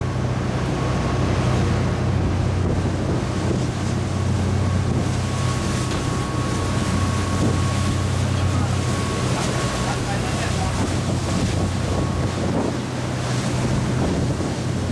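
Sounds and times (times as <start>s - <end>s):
boat engine drone: 0.0s - 14.9s
rushing water: 0.0s - 14.9s
wind noise: 1.8s - 14.9s
faint steady whine: 4.1s - 13.2s.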